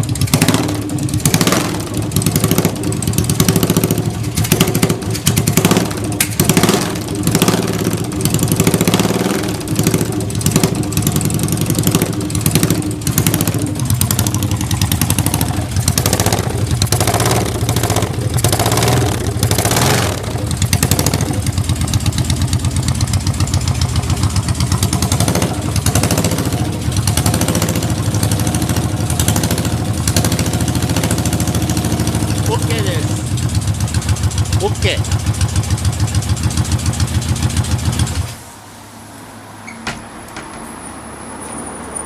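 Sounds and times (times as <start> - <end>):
motorcycle engine idling: 0.0 - 38.4.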